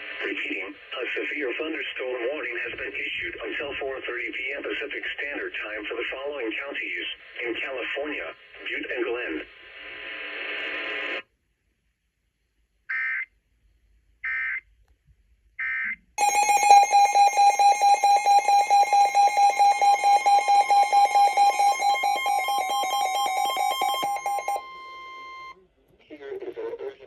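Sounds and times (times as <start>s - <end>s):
digital data tone bursts: 16.2s - 25.5s
pulsing electronic alarm: 16.2s - 25.5s
steady warning alarm tone: 16.2s - 25.5s.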